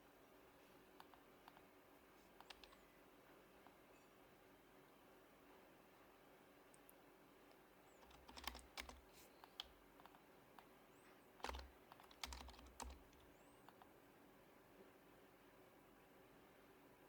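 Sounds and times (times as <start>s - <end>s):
soft keyboard keystrokes: 1.0s - 2.8s, 8.0s - 10.7s, 11.4s - 13.9s.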